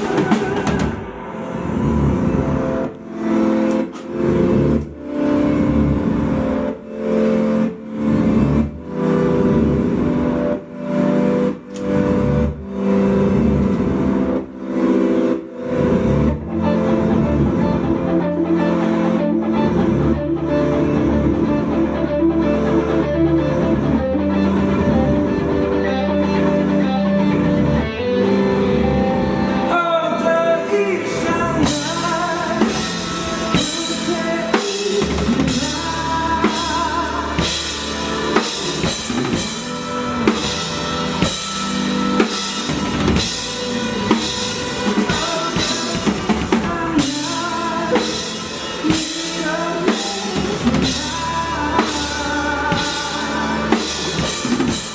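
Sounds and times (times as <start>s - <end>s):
instrumental band music with drums: 0.0s - 1.3s, 31.6s - 54.9s.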